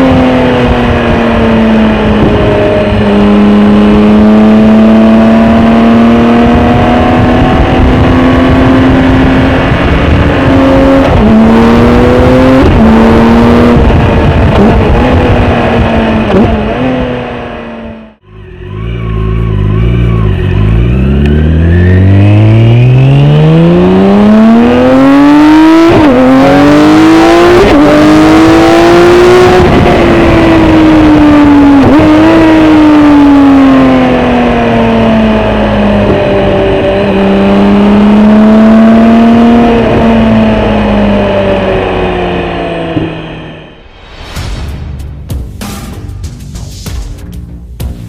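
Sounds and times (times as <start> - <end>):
motorcycle engine accelerating: 0.0 - 44.4.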